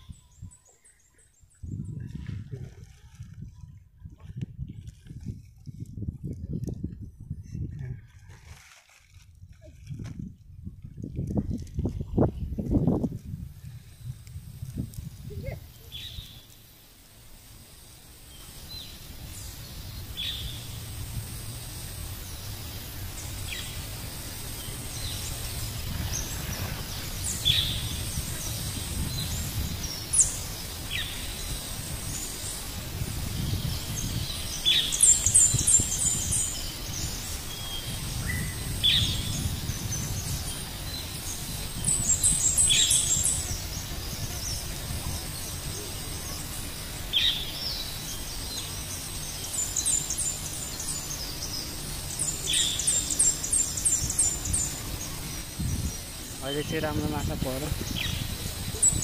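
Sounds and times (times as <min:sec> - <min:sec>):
birds chirping: 0:15.1 - 0:59.0.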